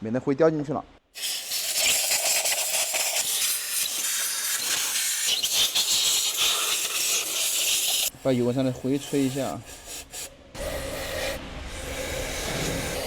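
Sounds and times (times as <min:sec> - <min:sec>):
compressed air blow gun hissing: 0:01.2 - 0:13.0.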